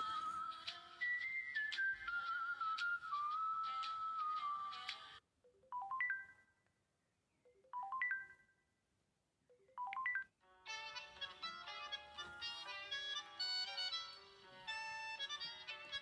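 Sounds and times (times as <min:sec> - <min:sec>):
whistle-like ringtone melody: 0:00.0 - 0:06.4
ringtone tune: 0:03.6 - 0:06.6, 0:07.5 - 0:08.6, 0:09.5 - 0:16.0.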